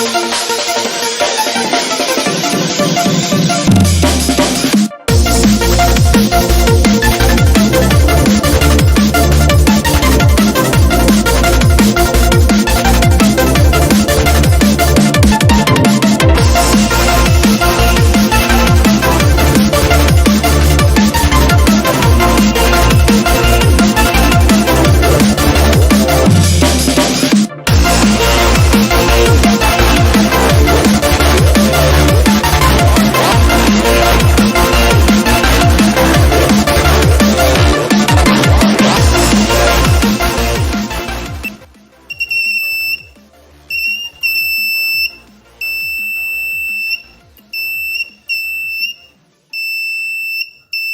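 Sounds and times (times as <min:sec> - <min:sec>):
drum and bass music: 0:00.0 - 0:48.4
fire alarm buzzer beeping: 0:42.1 - 0:50.9.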